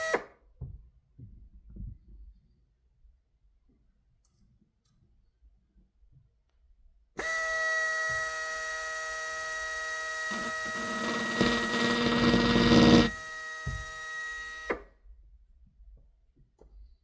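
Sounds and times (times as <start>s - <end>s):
drill whining: 7.2s - 14.7s
drill bit grinding glass: 10.3s - 13.2s.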